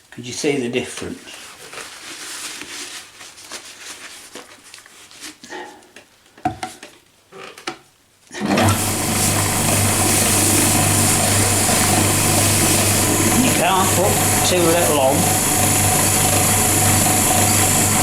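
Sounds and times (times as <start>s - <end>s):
wood lathe humming and whirring: 8.4s - 18.0s.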